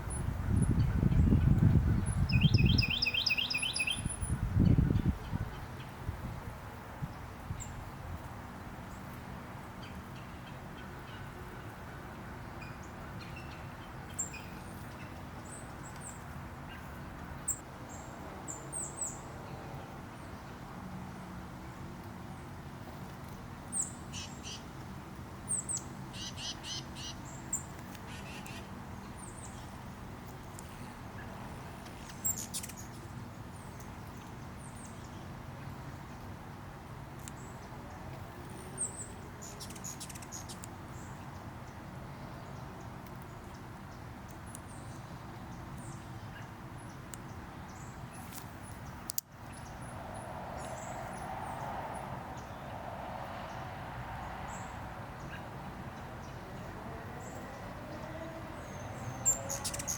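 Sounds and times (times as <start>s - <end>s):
hummingbirds chipping: 0.0s - 5.9s, 25.5s - 35.2s, 37.2s - 41.8s, 53.5s - 59.9s.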